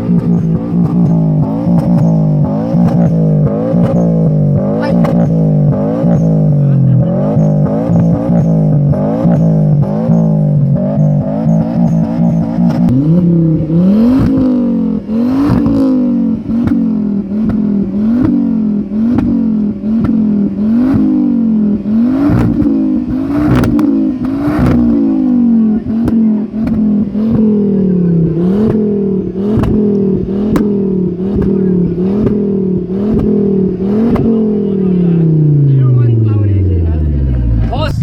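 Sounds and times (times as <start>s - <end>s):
exhaust cracks and pops: 0.0s - 5.4s, 19.1s - 19.4s, 22.3s - 22.8s, 23.5s - 25.0s, 25.9s - 27.6s, 28.5s - 34.4s
car engine revving: 0.0s - 38.0s.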